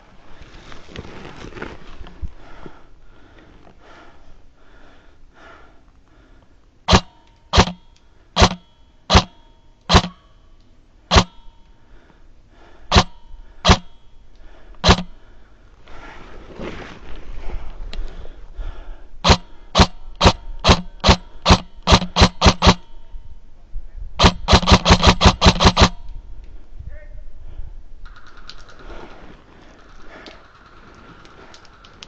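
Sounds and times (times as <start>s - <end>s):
low rustle: 0.0s - 4.4s, 14.5s - 19.0s, 28.5s - 32.0s
airsoft gun shots: 6.9s - 10.2s, 11.1s - 11.5s, 12.9s - 14.0s, 14.8s - 15.1s, 19.2s - 23.0s, 24.2s - 26.1s.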